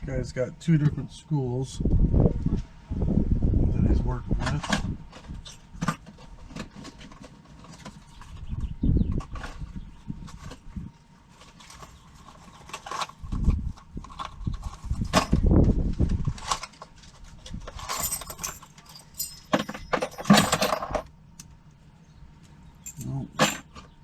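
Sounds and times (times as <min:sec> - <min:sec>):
lock and tools clicking and rattling: 0:17.6 - 0:21.5, 0:22.8 - 0:24.0
jingling metal: 0:17.8 - 0:21.0, 0:22.8 - 0:23.8.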